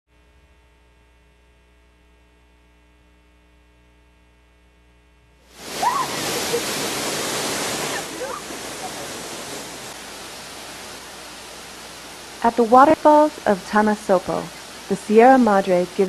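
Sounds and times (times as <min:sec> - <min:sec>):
faint electrical hum: 0:00.2 - 0:16.0
waterfall rushing: 0:05.5 - 0:16.0.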